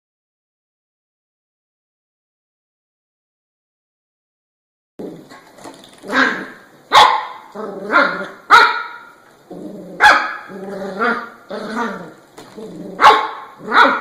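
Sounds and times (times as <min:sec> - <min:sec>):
dog barking: 0:06.1 - 0:09.1, 0:10.0 - 0:11.3, 0:13.0 - 0:14.0.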